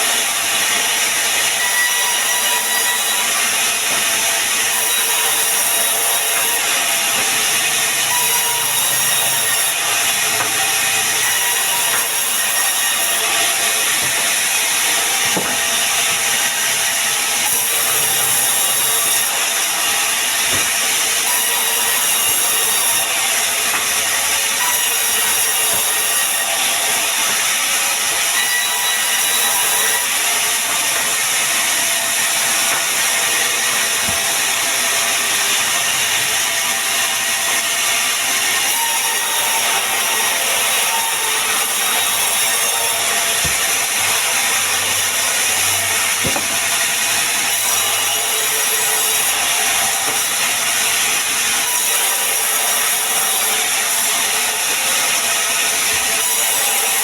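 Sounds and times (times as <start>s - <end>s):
saw blade cutting log: 0.0s - 57.0s.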